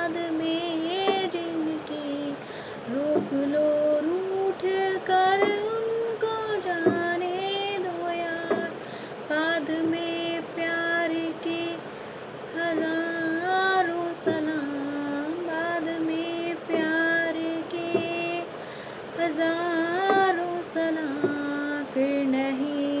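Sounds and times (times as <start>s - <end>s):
woman singing: 0.0s - 11.9s, 12.5s - 23.0s.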